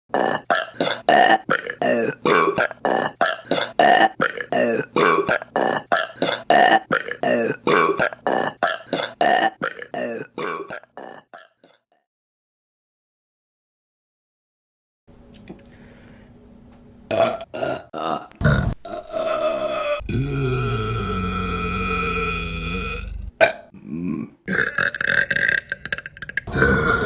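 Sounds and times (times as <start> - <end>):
woman burping: 0.1 - 11.8, 17.1 - 21.2, 22.7 - 27.0.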